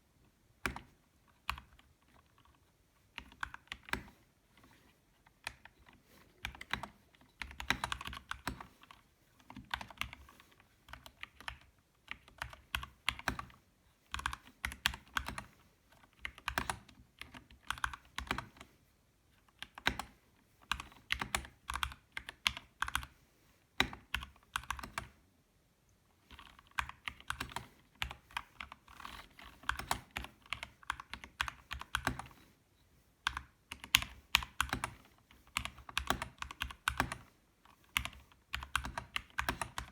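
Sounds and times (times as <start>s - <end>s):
mechanical keyboard typing: 0.6s - 2.6s, 3.2s - 4.2s, 5.4s - 18.7s, 19.5s - 23.2s, 23.8s - 25.2s, 26.3s - 32.4s, 33.2s - 39.9s.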